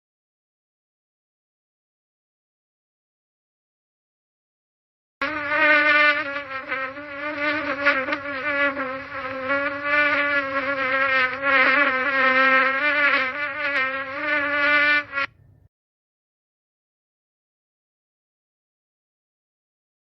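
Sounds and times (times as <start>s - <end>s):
housefly buzzing: 5.2s - 15.4s.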